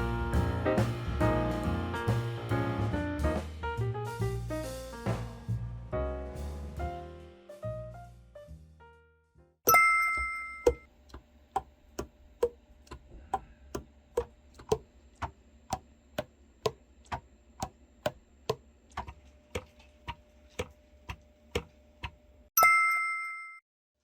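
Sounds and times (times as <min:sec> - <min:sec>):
bell-like ding ringing: 0:09.7 - 0:10.9, 0:22.6 - 0:23.6.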